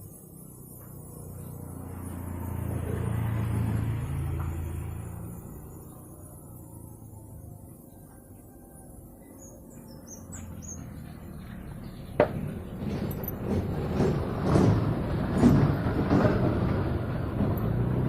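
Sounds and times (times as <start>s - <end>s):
metal parts scraping and clinking: 12.8s - 14.2s.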